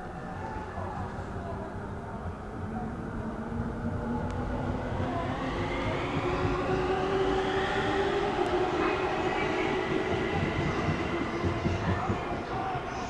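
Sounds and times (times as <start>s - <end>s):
train wheels rumbling on rail: 3.5s - 13.0s.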